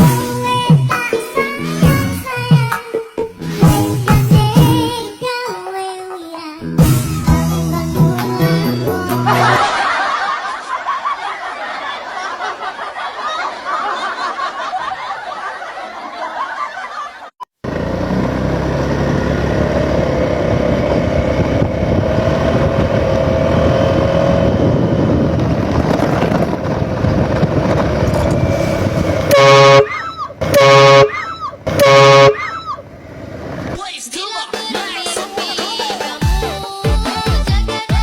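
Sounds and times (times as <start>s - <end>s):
music: 0.0s - 9.6s, 33.8s - 38.0s
engine hum: 17.6s - 33.8s
street traffic noise: 17.6s - 34.0s
vehicle horn blasts: 29.0s - 32.9s.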